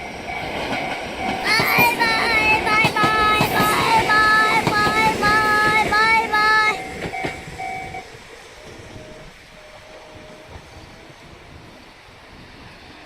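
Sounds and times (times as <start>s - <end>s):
level-crossing warning bell: 0.0s - 12.2s
passing train clatter: 0.0s - 13.0s.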